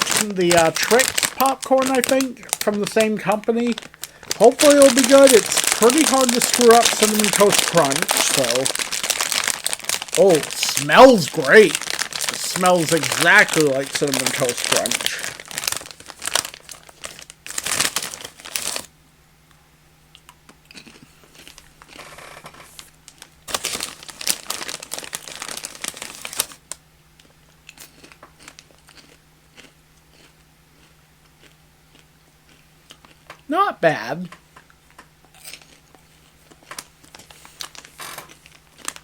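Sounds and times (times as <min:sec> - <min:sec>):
crinkly snack bag rustling: 0:00.0 - 0:18.9, 0:21.3 - 0:26.8, 0:35.5 - 0:39.0
popcorn crunching and chewing: 0:00.0 - 0:18.9, 0:20.1 - 0:33.6, 0:34.6 - 0:39.0.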